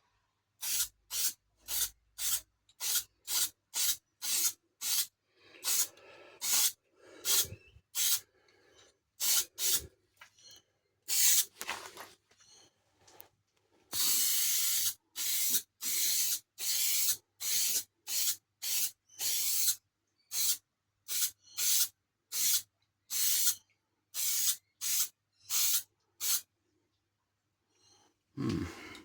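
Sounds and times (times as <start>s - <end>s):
aerosol spray can hissing: 0.6s - 8.2s, 9.2s - 9.9s, 11.1s - 11.5s, 14.0s - 23.6s, 24.2s - 26.5s.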